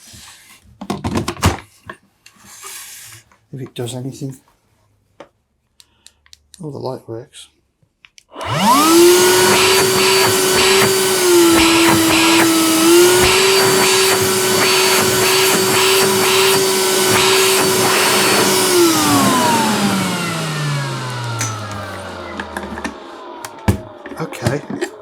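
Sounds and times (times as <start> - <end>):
vacuum motor whining: 8.3 - 25.0.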